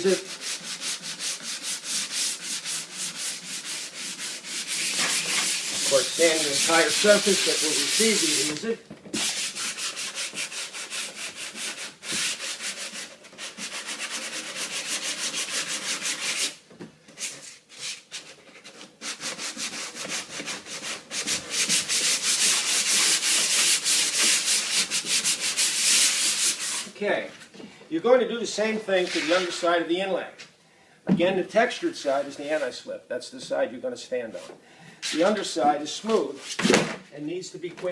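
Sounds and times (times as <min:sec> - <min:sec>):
sandpaper rubbing on fiberglass: 0:00.0 - 0:16.6, 0:19.0 - 0:27.0, 0:29.0 - 0:29.7.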